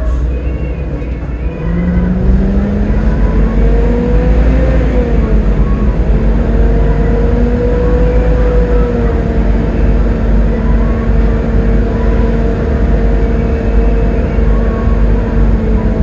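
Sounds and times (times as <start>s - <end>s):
bus engine whining and rumbling: 0.0s - 16.0s.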